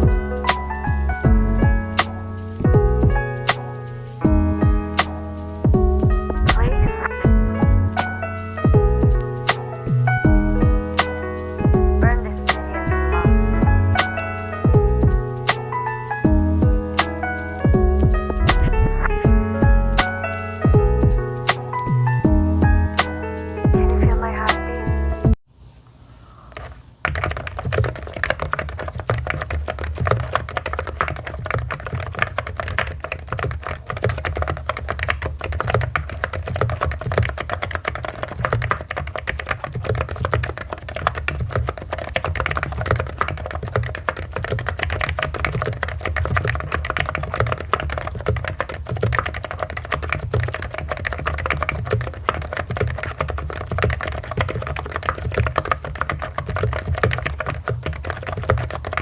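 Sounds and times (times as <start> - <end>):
fast typing on a keyboard: 8.0 - 13.4, 26.5 - 59.0.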